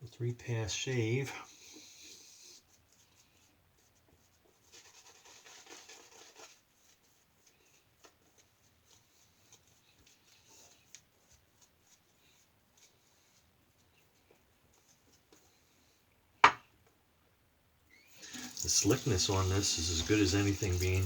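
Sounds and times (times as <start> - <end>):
razor scraping stubble: 18.2 - 21.0.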